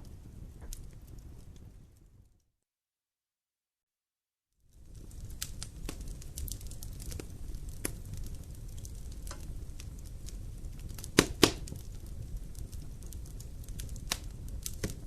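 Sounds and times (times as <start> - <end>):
fire crackling in fireplace: 0.0 - 2.5, 4.6 - 15.0
sharp pops: 11.0 - 11.8.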